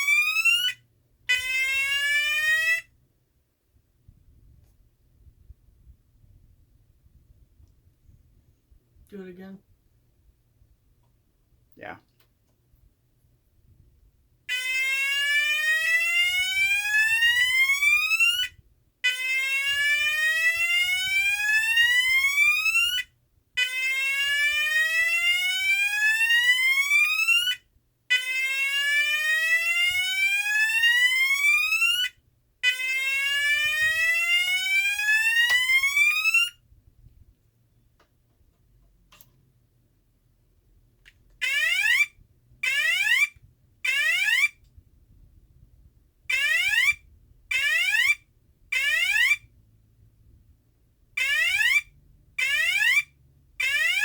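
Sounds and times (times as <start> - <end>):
electronic alarm rising sweep tone: 1.4 - 2.9, 14.5 - 18.5, 19.2 - 23.0, 32.7 - 36.6, 41.4 - 43.3, 43.9 - 44.6, 46.3 - 48.2, 48.8 - 49.4, 51.2 - 54.0.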